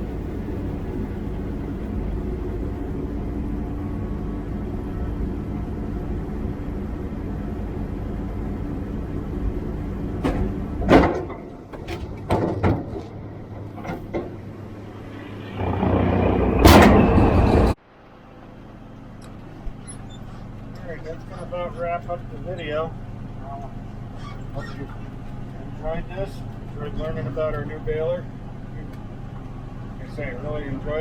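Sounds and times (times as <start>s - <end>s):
tractor engine running: 0.0s - 24.2s
sharp knocks and clatters: 10.2s - 14.5s, 15.6s - 17.8s
rushing burst: 14.9s - 17.8s.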